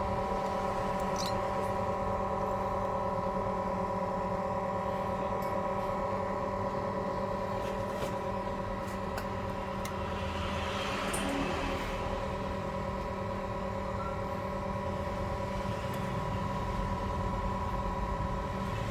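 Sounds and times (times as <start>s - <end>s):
vacuum pump humming: 0.0s - 18.9s.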